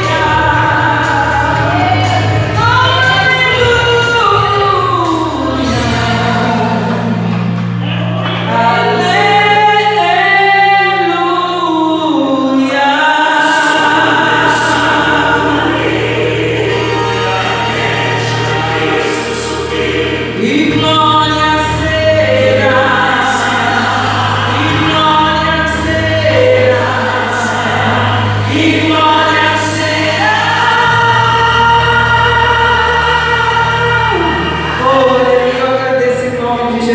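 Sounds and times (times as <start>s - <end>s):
voices singing a hymn: 0.0s - 36.9s
instrumental accompaniment: 13.6s - 36.9s.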